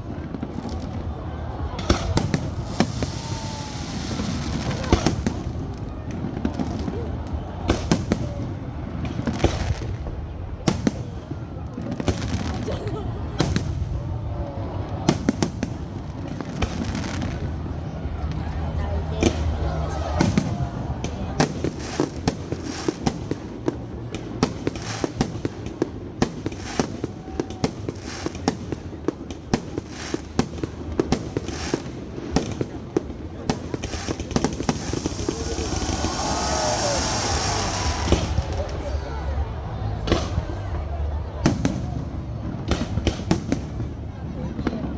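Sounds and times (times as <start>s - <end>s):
fireworks bangs: 0.0s - 44.9s
fireworks hissing: 1.8s - 5.8s, 33.6s - 40.6s.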